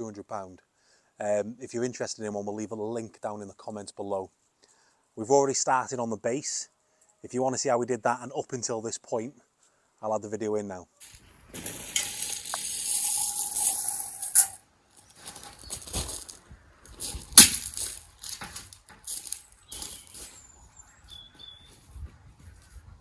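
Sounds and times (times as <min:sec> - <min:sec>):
rustling and scraping in soil: 0:14.9 - 0:22.0
faint bird chirp: 0:19.6 - 0:21.9.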